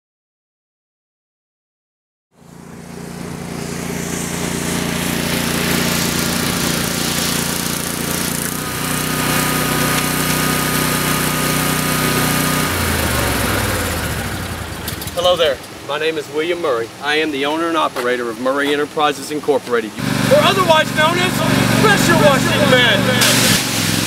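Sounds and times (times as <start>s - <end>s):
small gas engine running: 2.4s - 15.2s, 20.0s - 24.0s
spray hissing: 2.5s - 13.9s, 20.0s - 24.0s.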